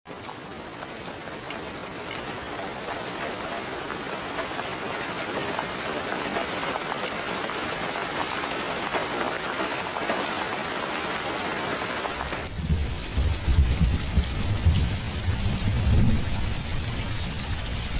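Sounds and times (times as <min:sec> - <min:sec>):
steady rain falling: 0:00.1 - 0:17.9.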